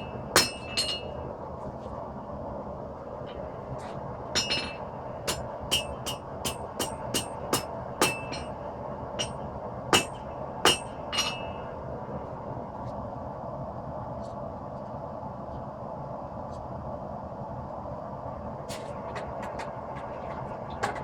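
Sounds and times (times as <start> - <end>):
hammer striking steel on anvil: 0.0 - 1.2, 4.4 - 8.6, 9.2 - 11.7
steady background noise: 0.0 - 21.0.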